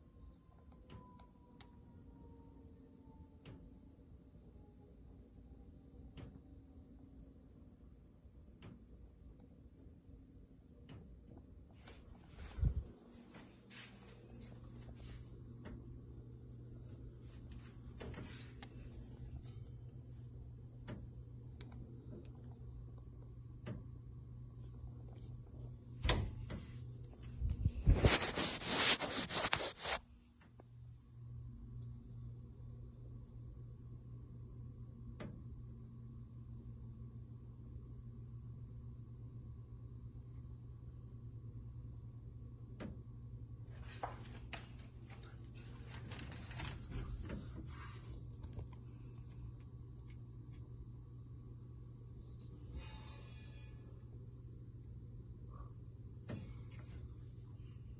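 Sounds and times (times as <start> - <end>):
steady low hum: 0.0 - 57.9.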